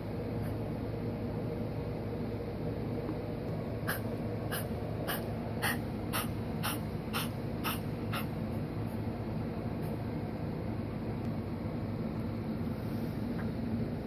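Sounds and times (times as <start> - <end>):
pet coughing: 3.9 - 8.3.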